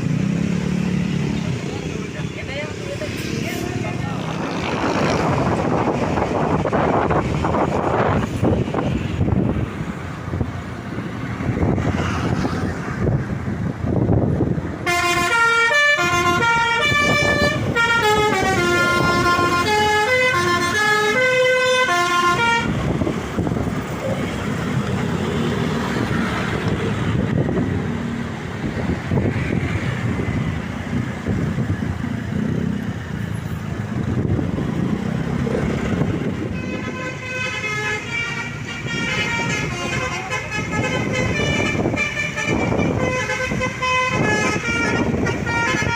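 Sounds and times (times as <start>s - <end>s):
bus and road running noise: 0.0s - 45.9s
bus air horn playing tune: 14.8s - 22.9s, 36.4s - 45.9s.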